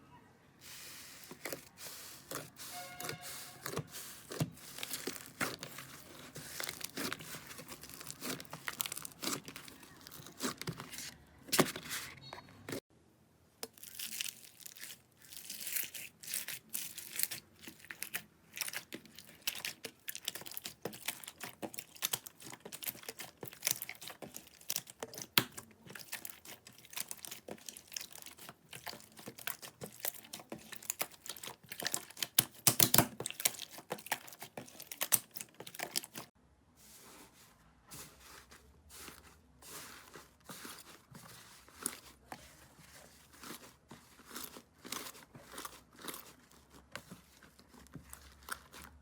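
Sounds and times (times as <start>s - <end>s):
slime crackling and popping: 2.7s - 11.1s, 13.6s - 36.3s.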